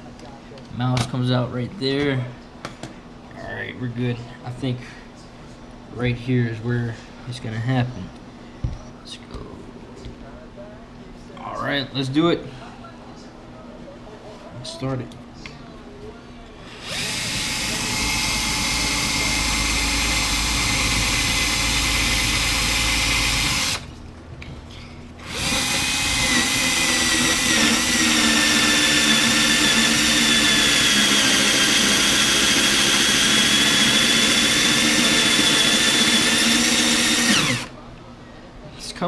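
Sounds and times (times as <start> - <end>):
electric drill cutting wood: 16.7 - 23.9, 25.2 - 37.7.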